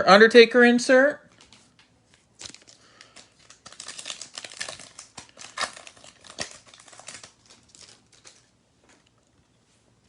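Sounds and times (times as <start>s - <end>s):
wrapper crinkling: 1.3s - 9.2s.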